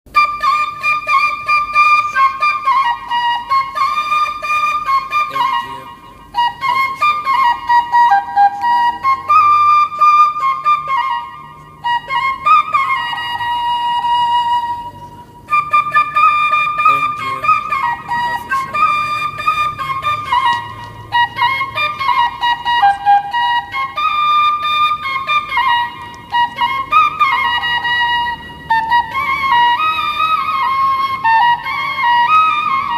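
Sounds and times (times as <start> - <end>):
solo flute melody: 0.1 - 32.9.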